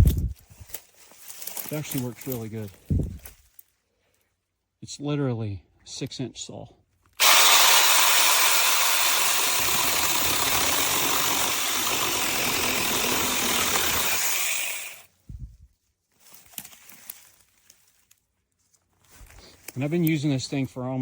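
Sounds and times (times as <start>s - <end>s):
mini chainsaw high whine: 7.2s - 15.1s.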